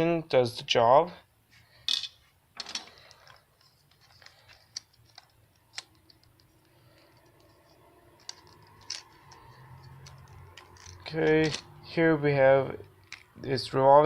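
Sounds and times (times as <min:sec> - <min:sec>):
plastic toy parts clicking: 0:02.7 - 0:11.7.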